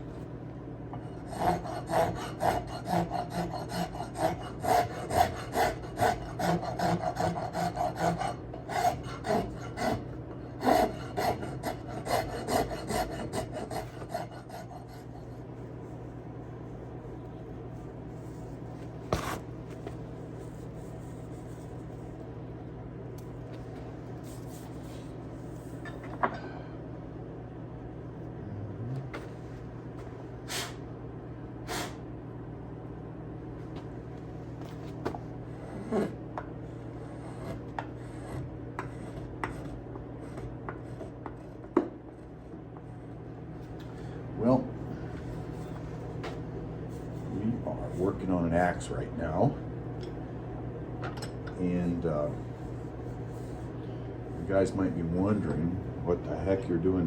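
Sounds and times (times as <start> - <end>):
steady low hum: 0.0 - 57.0
hand rasp on wood: 1.2 - 15.2.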